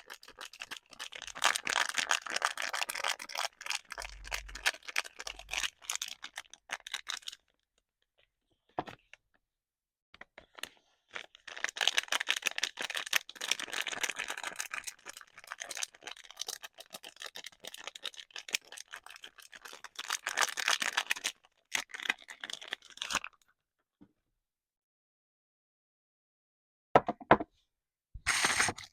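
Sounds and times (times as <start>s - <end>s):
wrapping crinkling and tearing: 0.0s - 7.5s, 11.1s - 23.4s.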